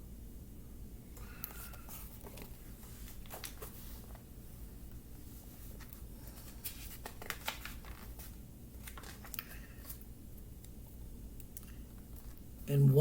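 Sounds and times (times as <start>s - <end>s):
low room hum: 0.0s - 13.0s
paper rustling: 1.6s - 4.2s, 5.5s - 10.0s.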